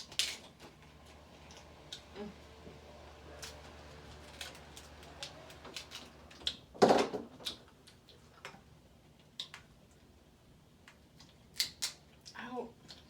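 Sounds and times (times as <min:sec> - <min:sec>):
crab shells cracking: 0:11.5 - 0:12.0.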